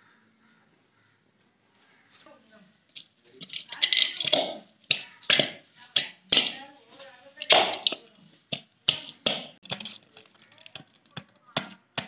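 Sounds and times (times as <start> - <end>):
crisp shells cracking: 9.6 - 11.6.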